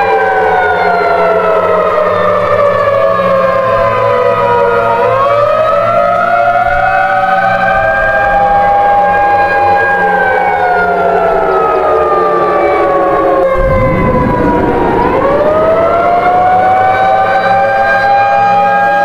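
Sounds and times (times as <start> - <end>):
warning sirens wailing: 0.0 - 19.0.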